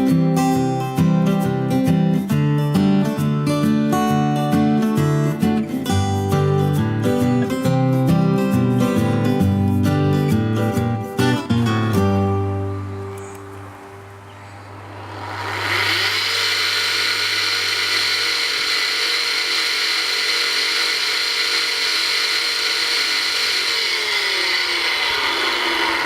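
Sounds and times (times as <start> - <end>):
electric motor whining: 11.8 - 26.0.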